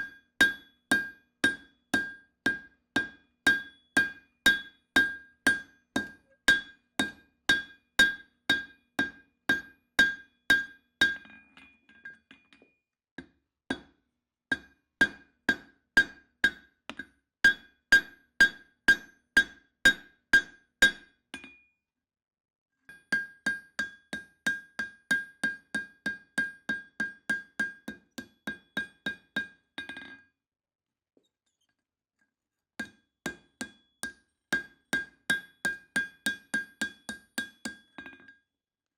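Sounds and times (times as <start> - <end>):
hammer striking hot steel on anvil: 0.4 - 11.3.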